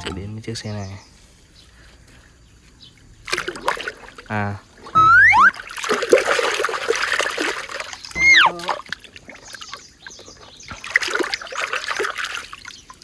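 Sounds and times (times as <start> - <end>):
water splashing and trickling: 3.2 - 13.0
short rising and falling tone: 5.0 - 5.5.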